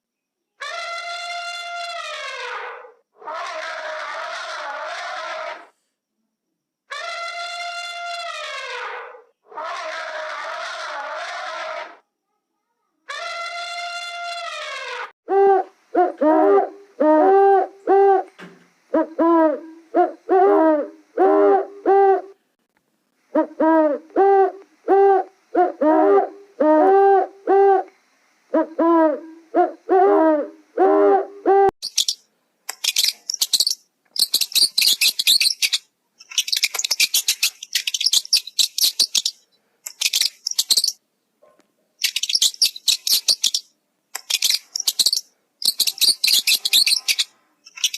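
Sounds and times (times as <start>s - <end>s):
animal hooting calls: 0.6s - 5.7s, 6.9s - 12.0s, 13.1s - 18.3s, 18.9s - 22.4s, 23.3s - 27.9s, 28.6s - 31.7s
rapid high-pitched chirping: 31.8s - 41.0s, 42.0s - 47.9s.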